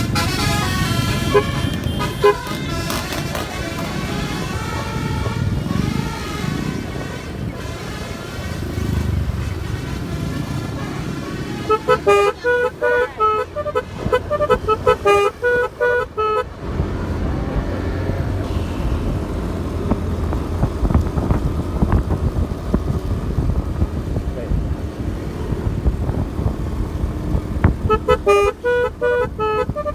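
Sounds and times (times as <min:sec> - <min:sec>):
horn playing short clipped notes: 0:00.0 - 0:08.2, 0:09.3 - 0:16.5, 0:27.8 - 0:29.9
low engine rumble: 0:00.0 - 0:29.9.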